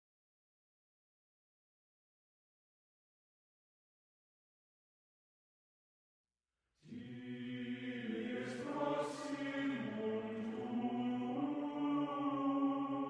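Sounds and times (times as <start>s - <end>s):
wordless chanted vocals: 6.8s - 13.0s.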